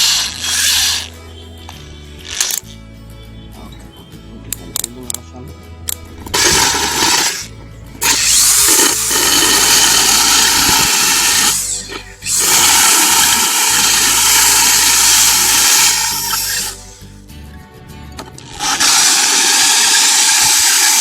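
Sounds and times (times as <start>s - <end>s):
drill grinding into tile: 0.0s - 1.2s, 6.4s - 16.9s, 18.4s - 21.0s.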